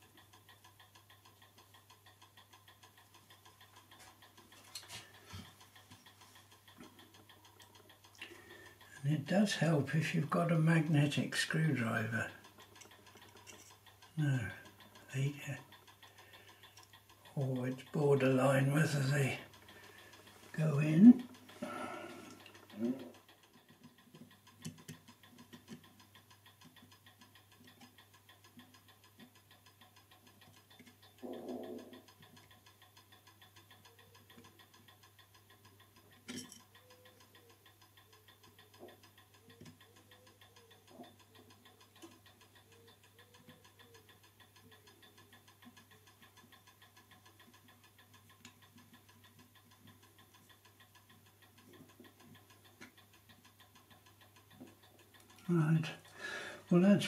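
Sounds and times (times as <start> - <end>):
fast clock ticking: 0.0 - 57.0
sharp click of small parts: 36.2 - 36.8.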